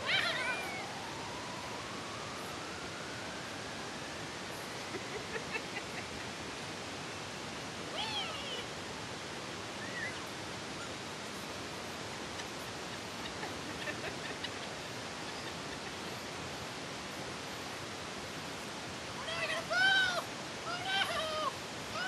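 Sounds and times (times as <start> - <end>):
steady hiss: 0.0 - 22.0.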